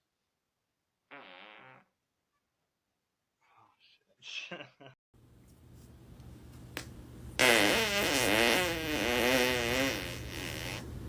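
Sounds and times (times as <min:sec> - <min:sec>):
long fart: 0:01.1 - 0:02.0, 0:07.4 - 0:10.9
steady low hum: 0:05.2 - 0:07.4, 0:10.8 - 0:11.0.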